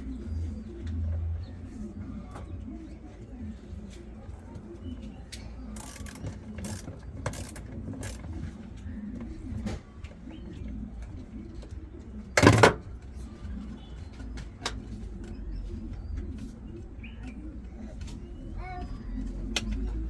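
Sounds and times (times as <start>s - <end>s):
tools clicking and knocking: 5.8s - 8.5s, 12.4s - 12.8s.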